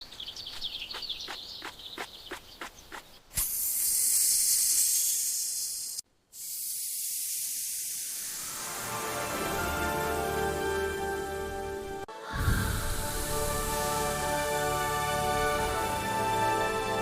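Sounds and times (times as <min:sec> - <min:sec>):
loud hiss: 0:03.3 - 0:11.3, 0:12.3 - 0:17.0.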